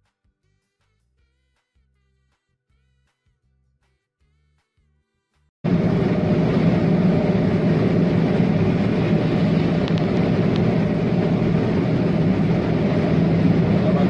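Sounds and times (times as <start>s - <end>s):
motor vehicle running: 5.7s - 14.0s.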